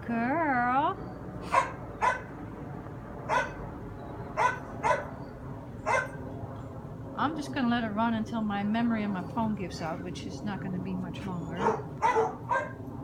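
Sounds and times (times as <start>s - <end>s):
dog barking: 1.5s - 2.3s, 3.3s - 3.6s, 4.4s - 5.2s, 5.8s - 6.2s, 11.6s - 12.8s.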